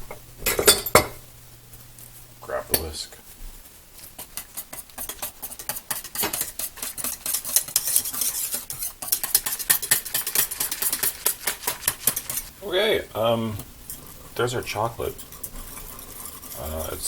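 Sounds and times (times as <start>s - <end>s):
whisk clicking in a pot: 4.0s - 12.5s, 13.6s - 17.0s.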